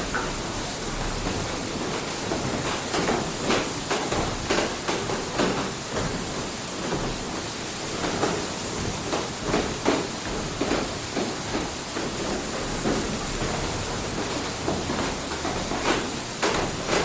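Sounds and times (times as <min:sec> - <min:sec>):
rush of falling water: 0:00.0 - 0:17.0
water mill knocks and splashes: 0:00.0 - 0:17.0.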